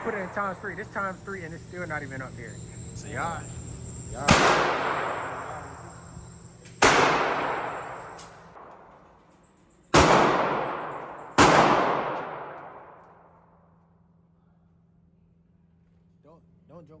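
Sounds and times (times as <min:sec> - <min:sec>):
gunshots echoing indoors: 0:00.0 - 0:00.8, 0:04.2 - 0:06.1, 0:06.8 - 0:09.3, 0:09.9 - 0:13.8.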